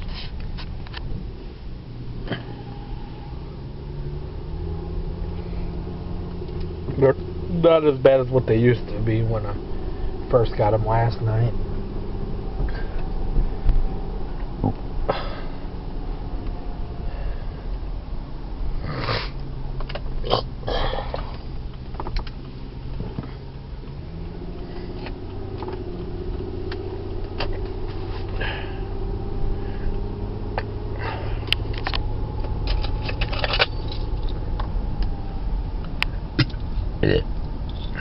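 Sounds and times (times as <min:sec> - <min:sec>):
low engine hum: 0:00.0 - 0:38.0
man hiccuping: 0:20.2 - 0:21.3.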